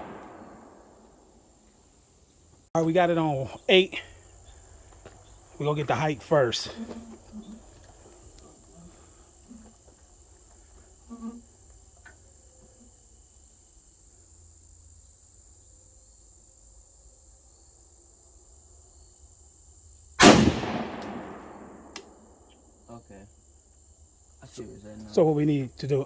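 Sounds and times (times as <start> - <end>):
rifle shot with echo: 0.0 - 1.1, 20.2 - 22.4
insects droning: 0.0 - 26.0.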